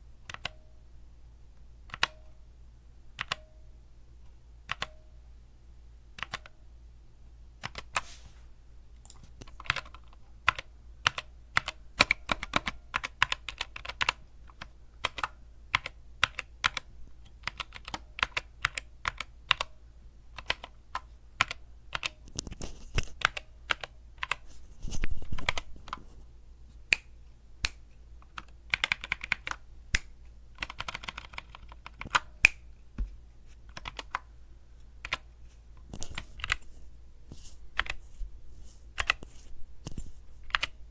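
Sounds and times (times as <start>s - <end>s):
mechanical keyboard typing: 0.3s - 0.6s, 1.9s - 2.2s, 3.2s - 3.5s, 4.7s - 5.0s, 6.2s - 6.5s, 7.6s - 8.0s, 9.4s - 19.7s, 20.4s - 22.5s, 23.1s - 24.4s, 28.2s - 29.6s, 30.6s - 32.4s, 33.7s - 34.2s, 35.0s - 35.3s, 40.5s - 40.8s.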